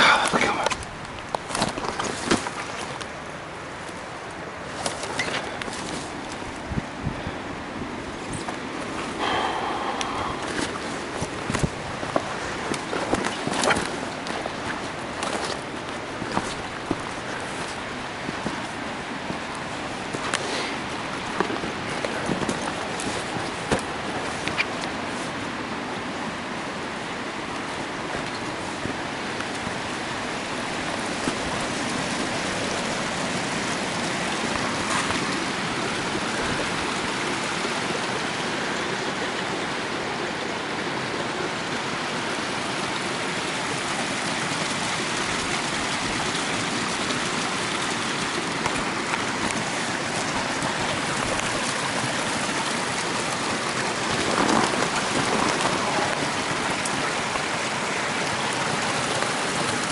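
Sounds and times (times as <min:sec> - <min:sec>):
mountain stream rushing: 0:00.0 - 0:59.9.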